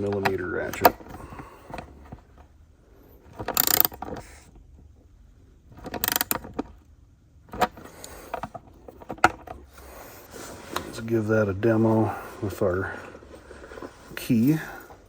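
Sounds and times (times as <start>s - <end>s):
ratchet wrench clicking: 3.5s - 4.0s, 5.9s - 6.4s.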